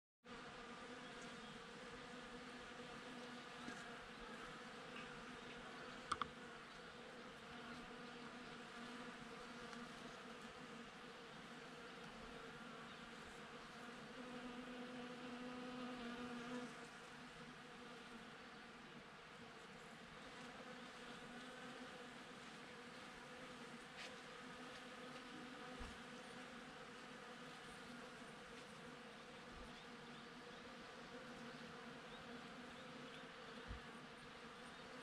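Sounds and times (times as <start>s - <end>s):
honeybees buzzing: 0.3s - 18.6s, 19.9s - 35.0s.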